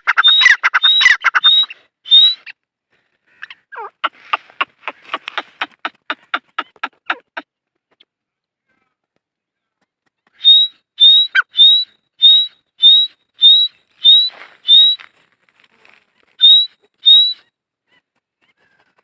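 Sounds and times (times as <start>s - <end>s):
francolin calling: 0.0s - 2.5s, 10.4s - 15.2s, 16.4s - 17.4s.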